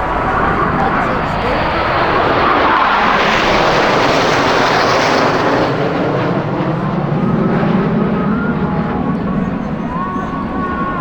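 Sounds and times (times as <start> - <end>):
jet engines passing: 0.0 - 11.0.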